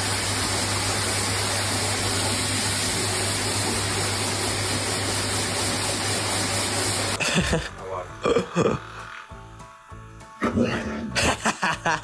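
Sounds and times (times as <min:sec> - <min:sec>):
blow dryer running: 0:00.0 - 0:10.4.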